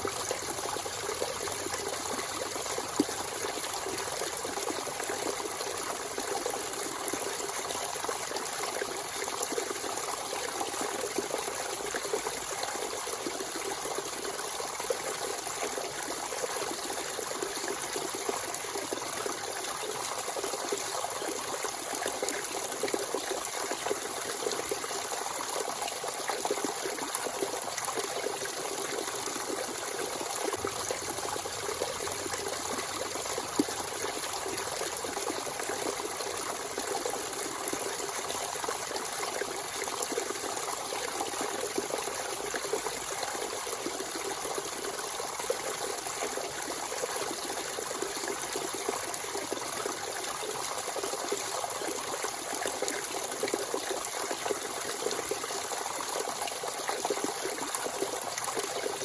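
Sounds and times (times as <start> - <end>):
spring water trickling: 26.4 - 41.2.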